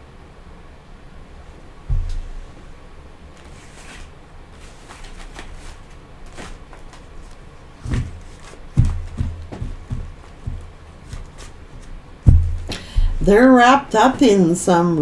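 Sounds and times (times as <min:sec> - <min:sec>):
low thumps: 0:01.8 - 0:02.8, 0:07.8 - 0:14.5
cards clicking and rustling: 0:03.4 - 0:12.0.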